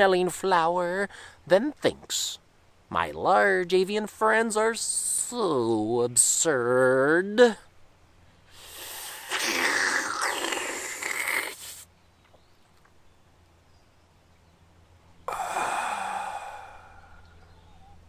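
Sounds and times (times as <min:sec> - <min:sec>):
person exhaling breathily: 0:08.5 - 0:11.9, 0:15.3 - 0:17.4.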